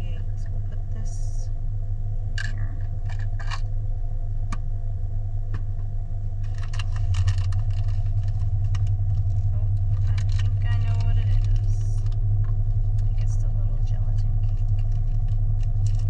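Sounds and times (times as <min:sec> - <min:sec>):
steady low hum: 0:00.0 - 0:16.0
wrapping crinkling: 0:06.4 - 0:12.2, 0:14.3 - 0:16.0.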